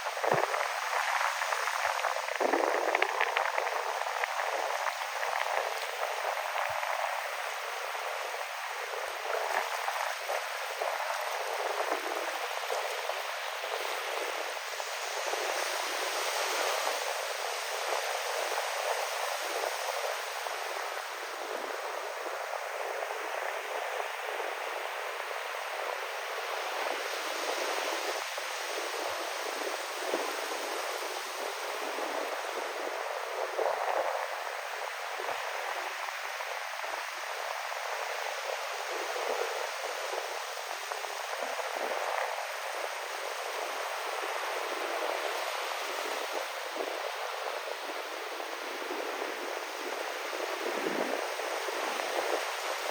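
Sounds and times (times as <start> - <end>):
ocean waves washing in: 0.0 - 52.9
wind: 0.0 - 52.9.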